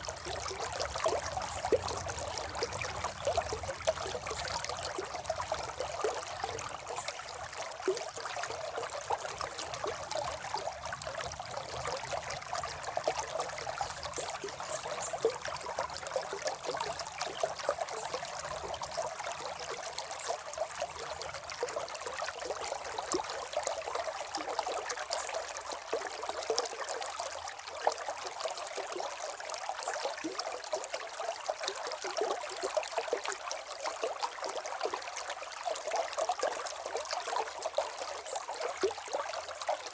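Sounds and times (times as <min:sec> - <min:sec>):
stream water burbling: 0:00.0 - 0:39.9.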